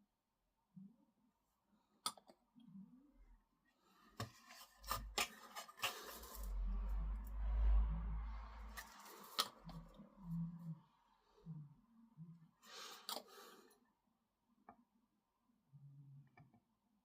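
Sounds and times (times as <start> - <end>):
handling rustle: 4.1 - 6.6.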